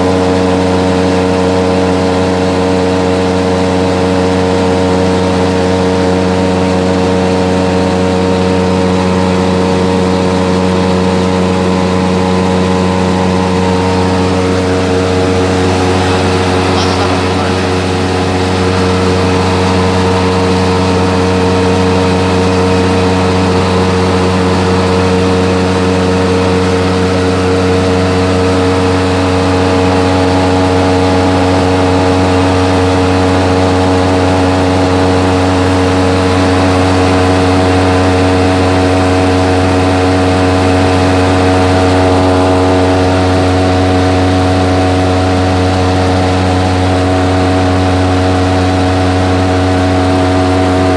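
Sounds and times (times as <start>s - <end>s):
electric fan motor hum: 0.0s - 50.9s.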